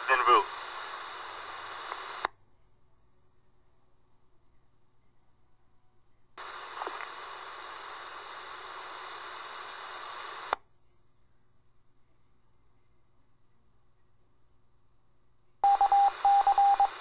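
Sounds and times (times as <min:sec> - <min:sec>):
radio static hiss: 0:00.0 - 0:02.3, 0:06.4 - 0:10.6, 0:15.6 - 0:17.0.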